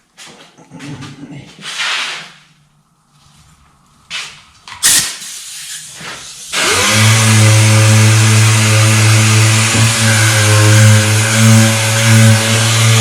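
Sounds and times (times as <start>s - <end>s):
sander humming and hissing: 6.5s - 13.0s.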